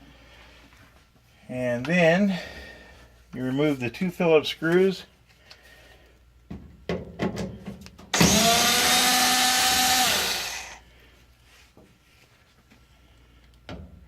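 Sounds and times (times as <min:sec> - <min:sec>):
power drill-driver running: 0:08.1 - 0:10.8.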